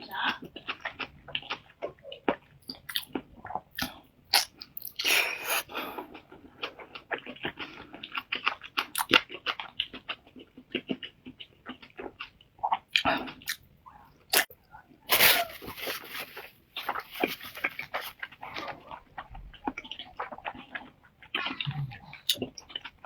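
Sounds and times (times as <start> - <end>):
food crunching while chewed: 0.1 - 23.0
wet mouth clicks: 12.7 - 13.6.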